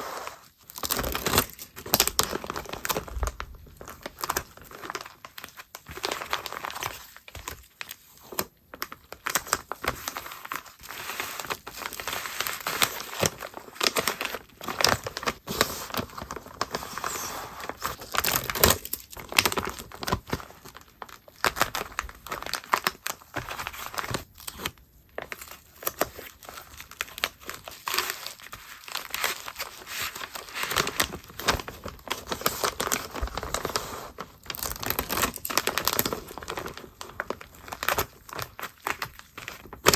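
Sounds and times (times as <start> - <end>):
plastic packaging crinkling: 0.0 - 39.9
plastic tearing: 0.6 - 39.9.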